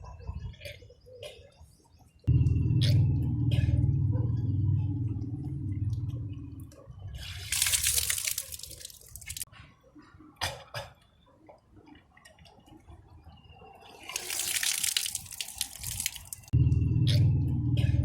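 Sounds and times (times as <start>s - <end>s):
water dripping: 7.2s - 9.5s, 13.8s - 16.6s.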